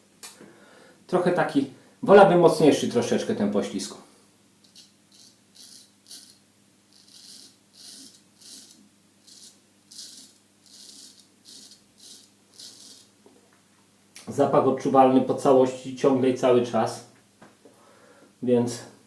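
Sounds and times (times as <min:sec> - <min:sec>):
razor scraping stubble: 0:04.6 - 0:13.1.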